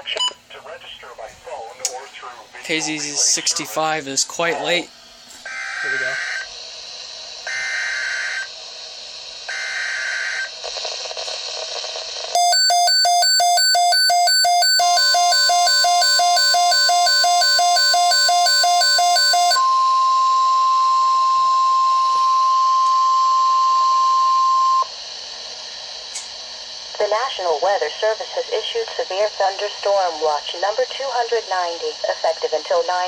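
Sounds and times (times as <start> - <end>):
steady warning tone: 5.5 - 6.6, 12.4 - 24.9
data bursts: 12.4 - 22.1
electronic alarm beeping: 12.4 - 24.9.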